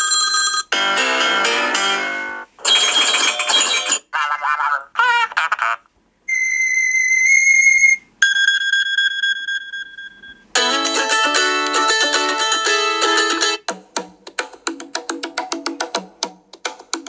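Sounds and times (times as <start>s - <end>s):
melodic phone ringtone: 8.2s - 13.6s.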